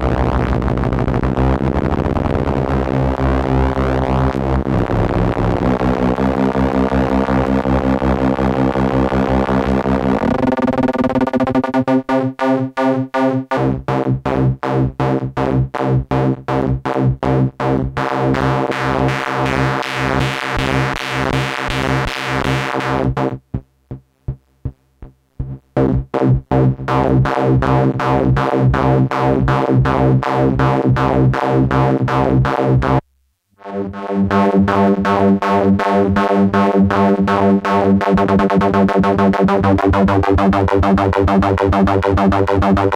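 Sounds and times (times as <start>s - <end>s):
synthesizer pulsing buzzy tone: 0.0s - 14.4s, 33.6s - 42.9s.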